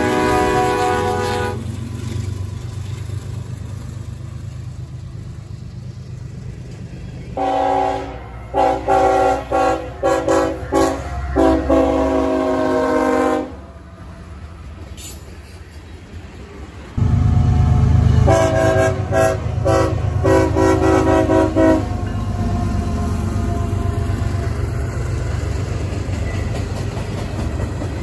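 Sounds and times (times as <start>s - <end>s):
locomotive air horn blasts: 0.0s - 1.7s, 7.4s - 13.7s, 17.0s - 24.1s
low train rumble: 0.0s - 28.0s.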